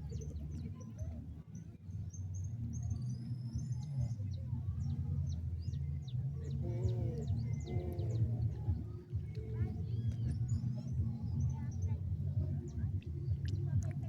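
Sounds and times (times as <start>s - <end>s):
birds chirping: 0.0s - 14.0s
steady low rumble: 0.0s - 14.0s.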